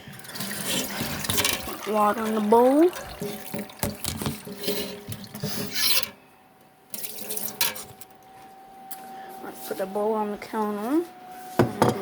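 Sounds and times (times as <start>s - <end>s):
water splashing in sink: 0.1s - 5.8s, 7.0s - 7.8s.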